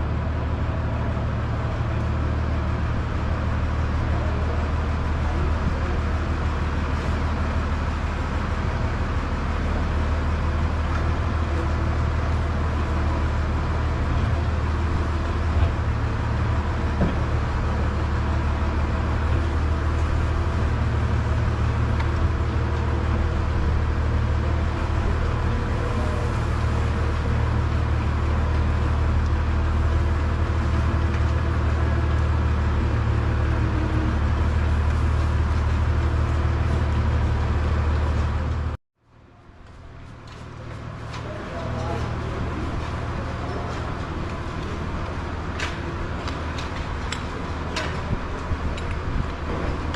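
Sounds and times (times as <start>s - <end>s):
low mechanical drone: 0.0s - 49.9s.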